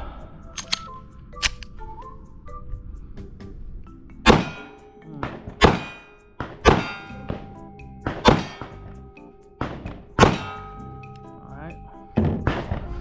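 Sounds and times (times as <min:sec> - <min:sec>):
pistol shots: 0:00.6 - 0:01.6, 0:04.3 - 0:04.7, 0:05.6 - 0:06.0, 0:08.2 - 0:08.7
fainter cracks: 0:00.6 - 0:01.7.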